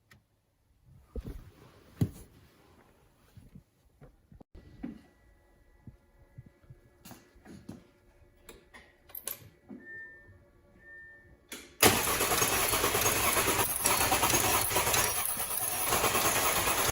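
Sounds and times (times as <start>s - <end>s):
starter cranking car engine: 11.8s - 16.9s.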